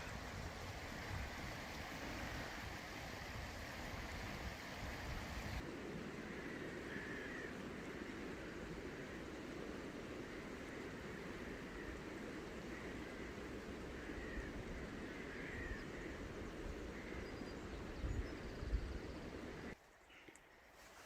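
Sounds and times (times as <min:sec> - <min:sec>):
faint bird chirps: 0:19.8 - 0:21.0.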